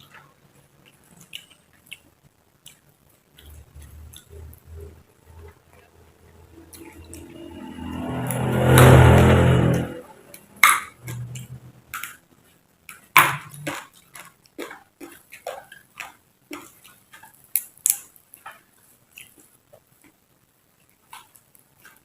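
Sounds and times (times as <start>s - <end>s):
chewing crisp raw vegetables: 11.0s - 22.0s.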